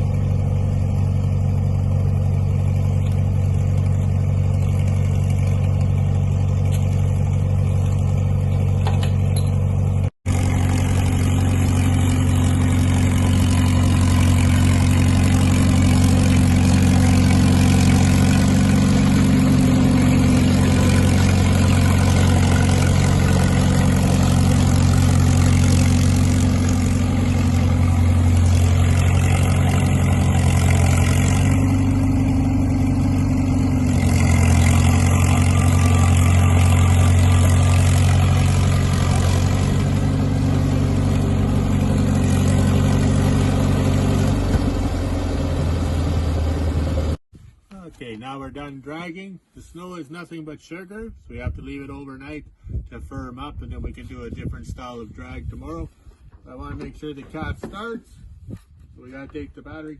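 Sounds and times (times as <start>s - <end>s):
dozer diesel engine running: 0.0s - 47.2s.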